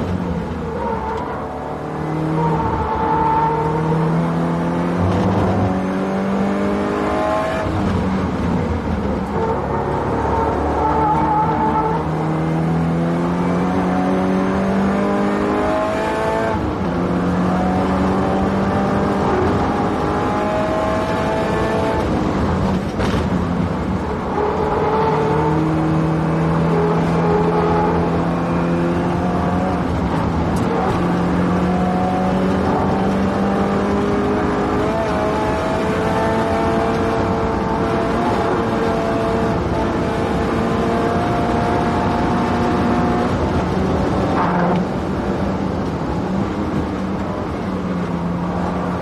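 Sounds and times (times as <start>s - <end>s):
car engine accelerating: 0.0s - 49.0s.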